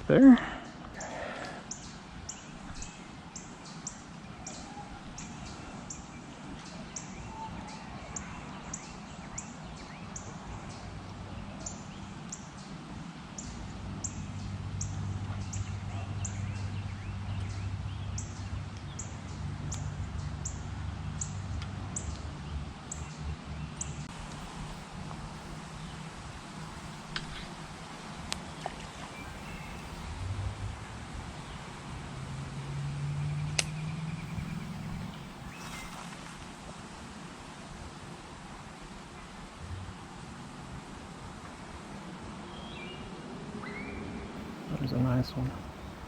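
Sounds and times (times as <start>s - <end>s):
steady low hum: 23.4s - 30.2s, 34.2s - 36.0s
bird chirping: 23.8s - 30.0s, 33.8s - 36.0s, 44.4s - 46.0s.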